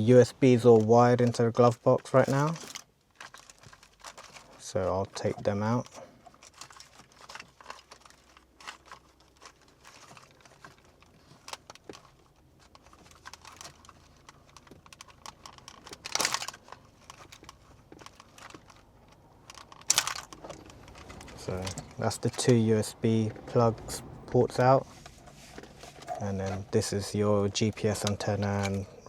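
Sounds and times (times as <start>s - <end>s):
cables rustling: 0.0s - 29.0s
scraping rustle: 2.1s - 28.9s.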